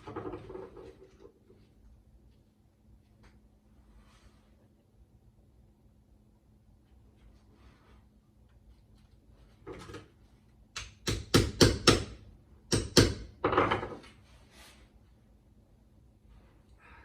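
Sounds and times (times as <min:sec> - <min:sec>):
sharp knocks on metal: 0:10.8 - 0:14.0.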